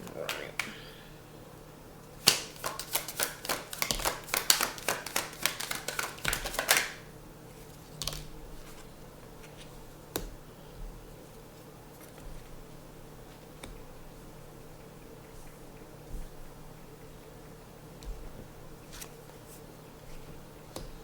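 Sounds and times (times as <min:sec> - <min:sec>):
cards being shuffled: 0:02.2 - 0:07.0, 0:07.6 - 0:09.8, 0:18.0 - 0:20.9.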